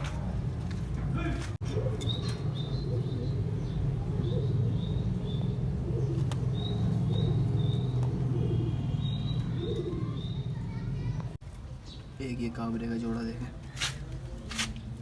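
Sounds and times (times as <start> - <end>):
high bird chirps: 2.0 - 10.8.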